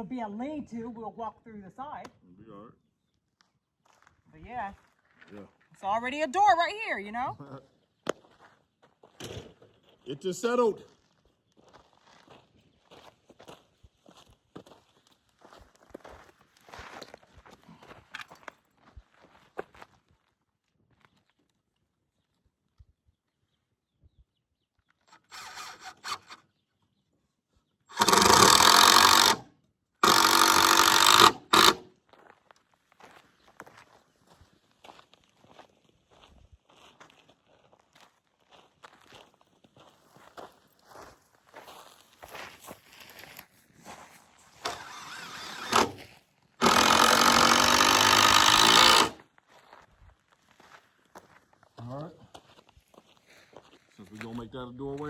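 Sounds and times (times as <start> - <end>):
power drill running: 25.1 - 26.5, 27.9 - 31.9, 44.6 - 49.2.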